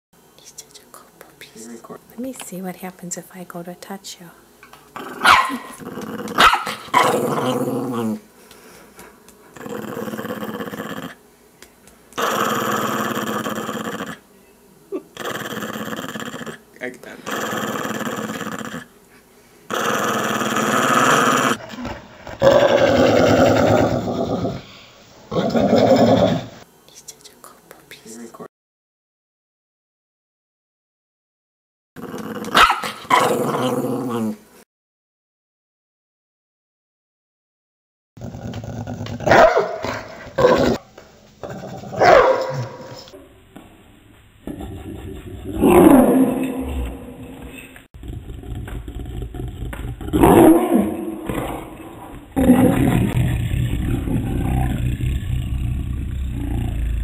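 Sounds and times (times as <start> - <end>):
dog growling: 5.0 - 8.3, 9.5 - 11.2, 12.2 - 14.2, 14.9 - 18.9, 19.7 - 24.6, 25.3 - 26.6, 32.0 - 34.4, 38.2 - 40.8, 44.4 - 57.0
slowed-down dog barks: 6.4 - 6.8, 39.3 - 40.6, 42.0 - 42.8
deep rattling growl: 22.3 - 24.6, 48.0 - 57.0.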